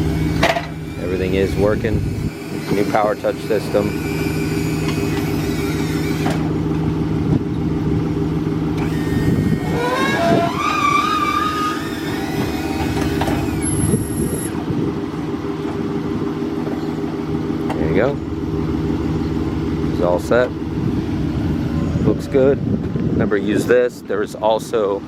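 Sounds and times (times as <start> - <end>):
wheelchair lift mechanical hum: 0.0 - 15.9
wavering whine: 0.0 - 22.4.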